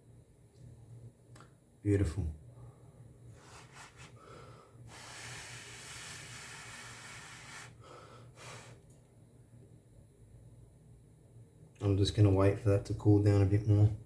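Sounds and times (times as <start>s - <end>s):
low electrical hum: 0.0s - 14.0s
person breathing: 2.5s - 8.8s.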